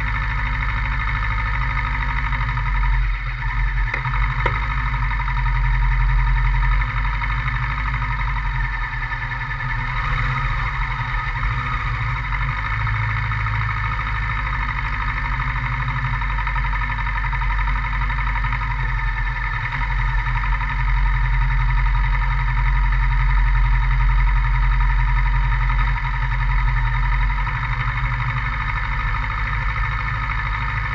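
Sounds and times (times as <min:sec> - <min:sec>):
motorcycle engine running steadily: 0:00.0 - 0:30.9.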